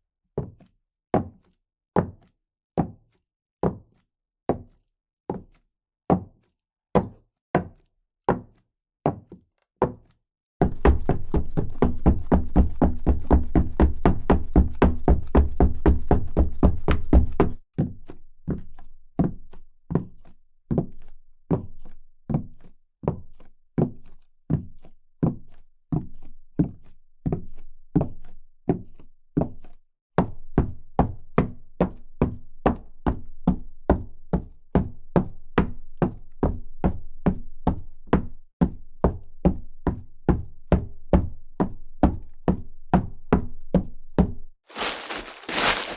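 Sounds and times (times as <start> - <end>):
footsteps: 44.7 - 45.9.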